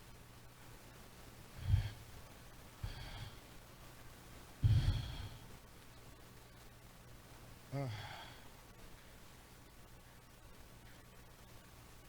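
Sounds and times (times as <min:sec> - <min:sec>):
faint low hum: 0:00.0 - 0:12.0
man breathing heavily: 0:01.6 - 0:02.2, 0:02.8 - 0:03.5, 0:04.6 - 0:05.5, 0:07.8 - 0:08.5.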